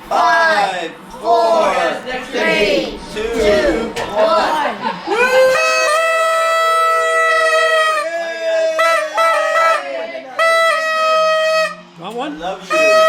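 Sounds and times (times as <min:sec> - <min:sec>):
party horns blowing: 0:05.2 - 0:13.0.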